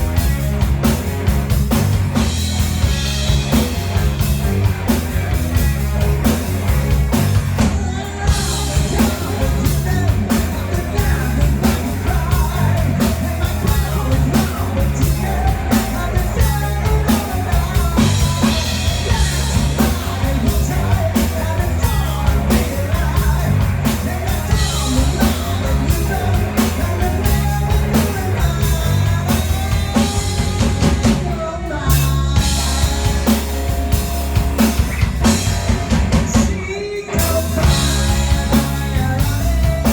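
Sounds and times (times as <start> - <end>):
live rock band: 0.0 - 39.9
person singing: 7.5 - 33.6, 36.1 - 39.9.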